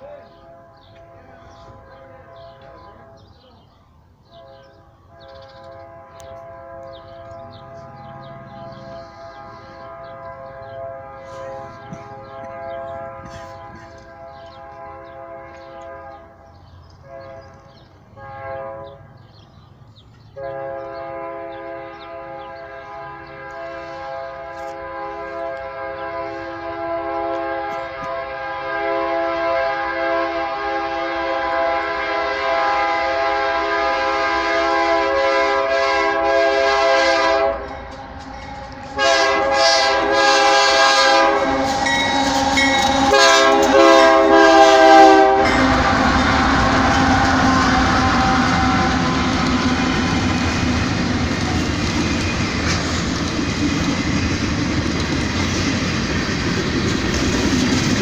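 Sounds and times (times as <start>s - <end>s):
locomotive air horn chord: 0.0s - 3.4s, 4.3s - 19.1s, 20.4s - 51.4s
passing train noise: 0.0s - 58.0s.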